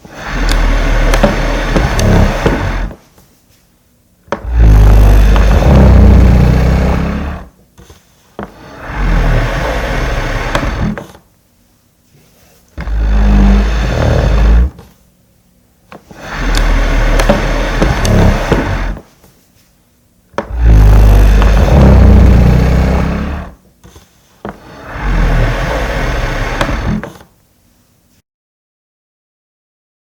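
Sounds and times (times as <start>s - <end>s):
table dragged across floor: 0.0s - 3.0s, 4.3s - 11.2s, 12.1s - 15.0s, 15.9s - 19.7s, 20.4s - 27.3s.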